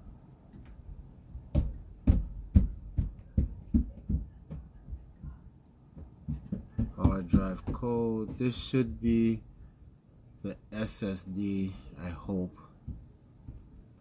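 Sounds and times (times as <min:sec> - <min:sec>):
dull low thumps: 0:00.8 - 0:09.6.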